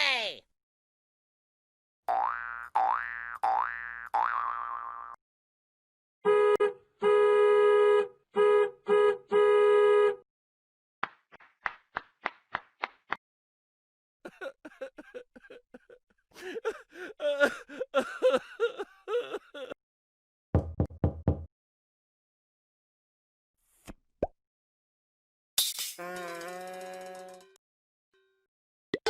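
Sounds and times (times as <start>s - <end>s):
horn honking: 6.2s - 10.2s.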